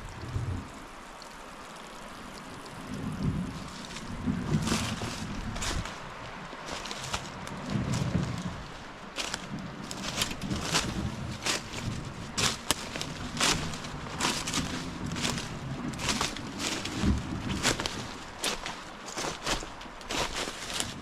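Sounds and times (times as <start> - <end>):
steady outdoor hiss: 0.0 - 21.0
footsteps on rough ground: 3.3 - 21.0.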